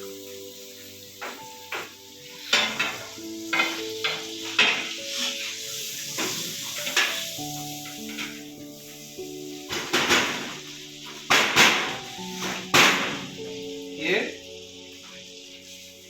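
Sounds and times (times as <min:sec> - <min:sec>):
background music: 0:00.0 - 0:16.0
chicken sizzling in a pan: 0:00.0 - 0:16.0
utensil scraping against pan: 0:02.3 - 0:08.6.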